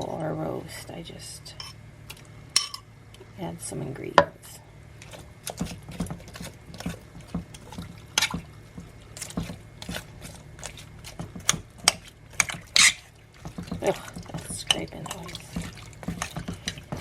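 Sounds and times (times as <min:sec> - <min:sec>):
spoon scraping in a pot: 0:11.9 - 0:13.1.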